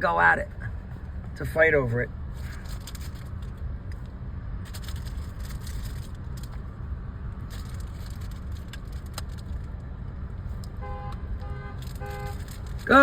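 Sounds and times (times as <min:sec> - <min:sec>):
low outdoor rumble: 0:00.0 - 0:13.0
light crackles and clicks: 0:07.5 - 0:13.0.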